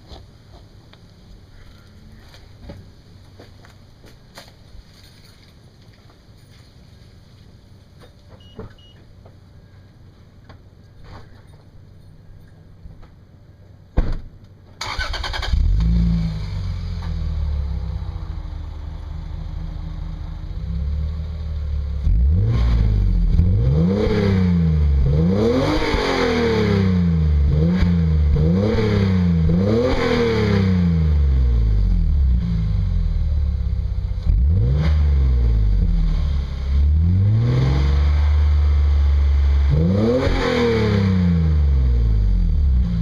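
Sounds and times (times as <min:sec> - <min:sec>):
car engine starter cranking: 0:14.8 - 0:15.9
engine revving: 0:14.8 - 0:18.7, 0:22.0 - 0:33.2, 0:34.2 - 0:43.0
car engine idling: 0:14.8 - 0:22.4.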